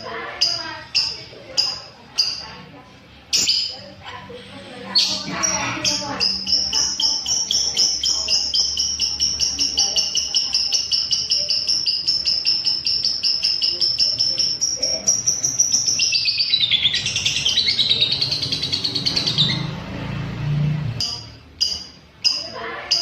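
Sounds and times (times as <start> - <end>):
lovebird shrill chattering: 3.3 - 3.9, 4.9 - 19.8.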